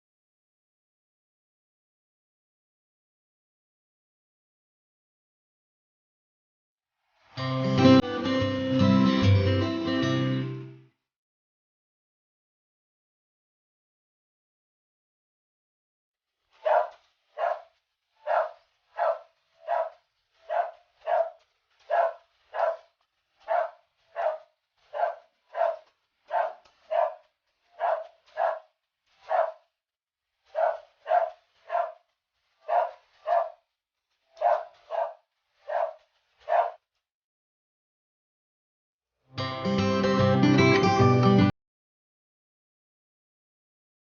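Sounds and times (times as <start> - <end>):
dog barking: 16.6 - 29.7, 30.5 - 33.6, 34.4 - 36.8.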